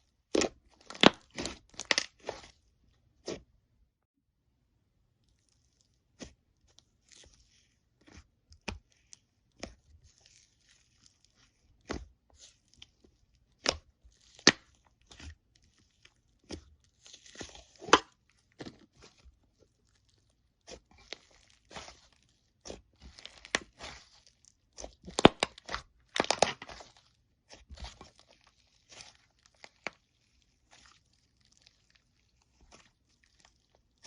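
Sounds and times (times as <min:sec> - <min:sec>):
slime crackling: 0:00.3 - 0:02.6, 0:08.9 - 0:34.0.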